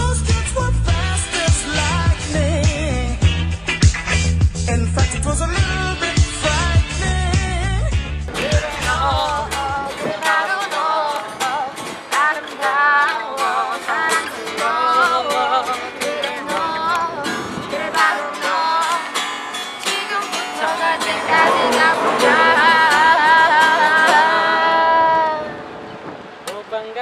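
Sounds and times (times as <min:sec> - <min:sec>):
guitar: 0:00.0 - 0:26.6
person singing: 0:04.7 - 0:25.6.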